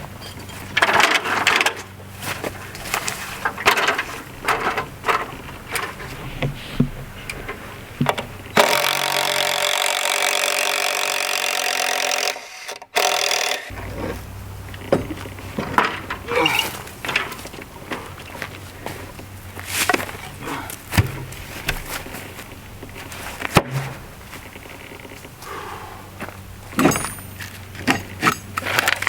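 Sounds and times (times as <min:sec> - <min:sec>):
hand tools knocking on timber: 0:20.9 - 0:21.9.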